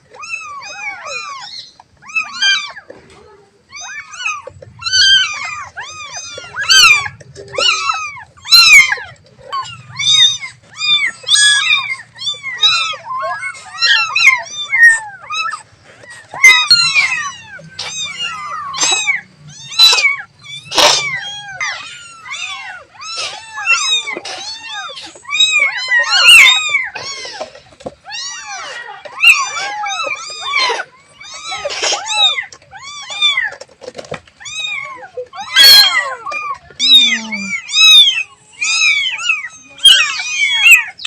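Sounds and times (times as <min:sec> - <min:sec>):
kitten mewing: 0:02.1 - 0:27.4, 0:34.5 - 0:41.0.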